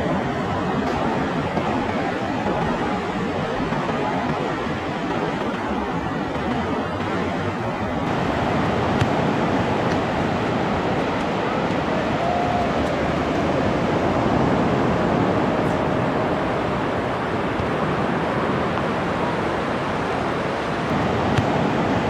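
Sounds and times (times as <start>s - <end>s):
ocean surf breaking: 0.0s - 22.0s.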